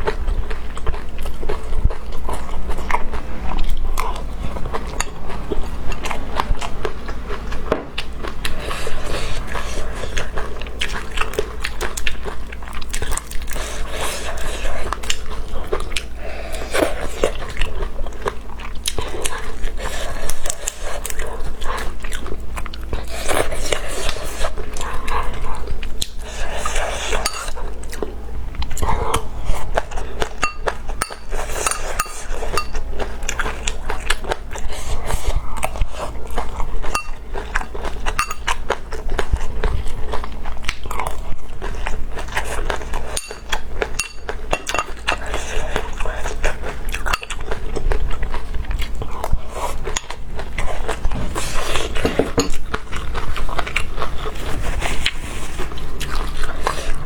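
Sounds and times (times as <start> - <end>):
chewing and crunching: 0.0 - 57.0.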